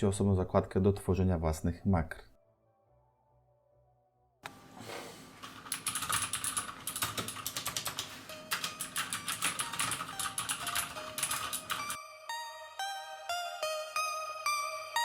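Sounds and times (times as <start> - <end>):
mechanical keyboard typing clicks: 5.6 - 12.0.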